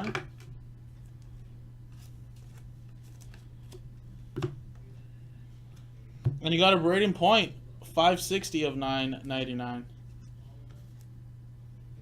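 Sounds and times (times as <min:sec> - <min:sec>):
low electrical hum: 0:00.0 - 0:12.0
trading cards rustling: 0:01.0 - 0:04.0.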